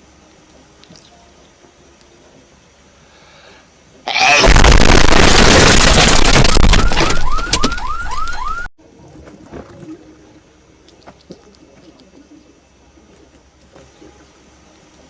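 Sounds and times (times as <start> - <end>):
distorted explosion blast: 4.2 - 7.7.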